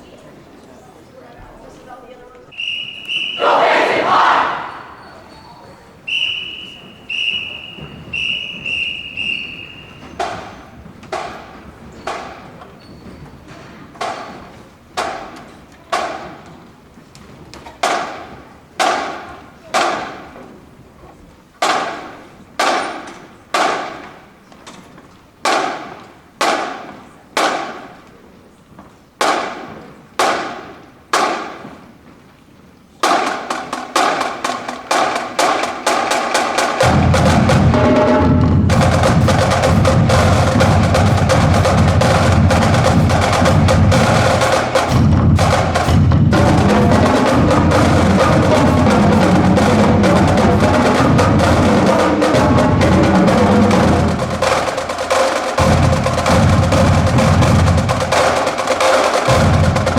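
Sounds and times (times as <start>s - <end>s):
drumline fast cadence: 2.5s - 12.7s, 33.0s - 59.9s
bass drums: 36.8s - 59.9s.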